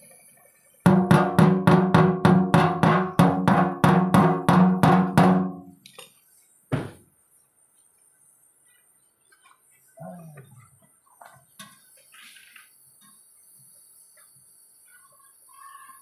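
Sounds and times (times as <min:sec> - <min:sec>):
hammer ringing on hollow metal: 0:00.9 - 0:05.7.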